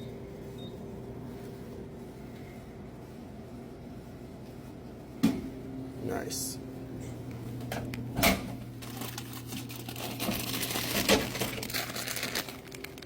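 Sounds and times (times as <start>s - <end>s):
low steady hum: 0.0s - 13.0s
chip bag crinkling: 8.8s - 13.0s.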